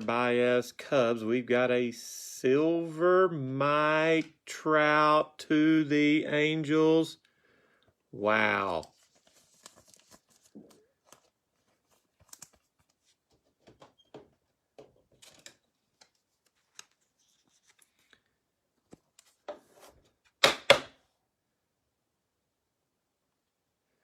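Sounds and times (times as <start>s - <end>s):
cards being shuffled: 8.6s - 13.8s, 15.3s - 18.2s.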